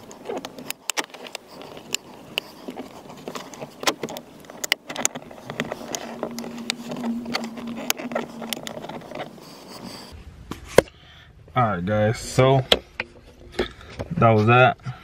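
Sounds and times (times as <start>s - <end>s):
steady low hum: 4.3s - 10.5s.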